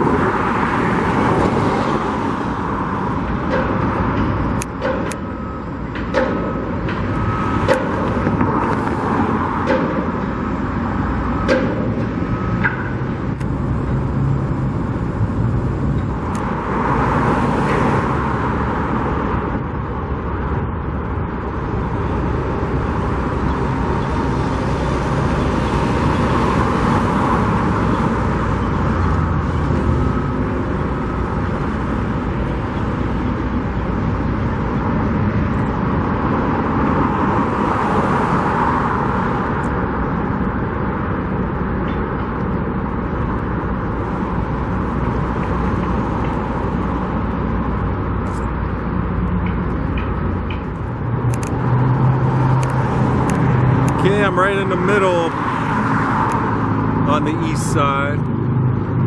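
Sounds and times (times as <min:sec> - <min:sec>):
vehicles passing: 0:00.0 - 0:59.0.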